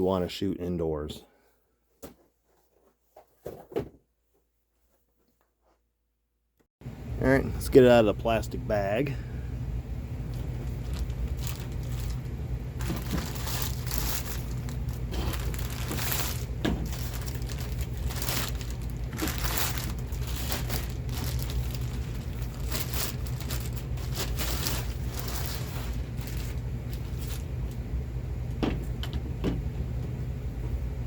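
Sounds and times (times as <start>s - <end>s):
plastic bag crinkling: 10.2s - 27.8s.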